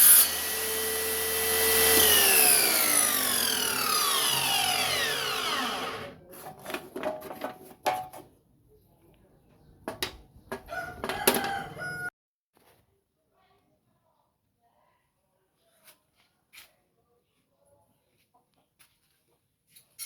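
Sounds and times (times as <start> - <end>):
saw motor winding down: 0.0 - 6.2.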